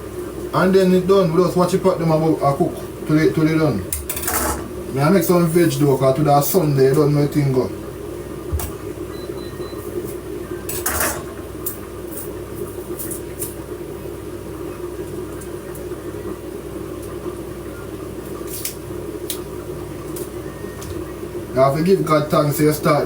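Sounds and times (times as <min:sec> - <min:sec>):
steady low hum: 0:00.0 - 0:23.0
pots and utensils clinking: 0:10.7 - 0:11.3.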